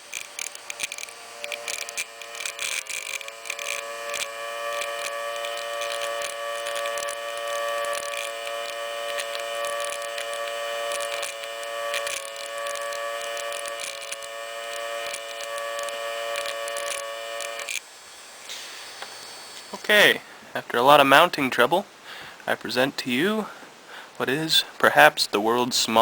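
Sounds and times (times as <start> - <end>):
miniature siren whine: 0.0 - 19.9.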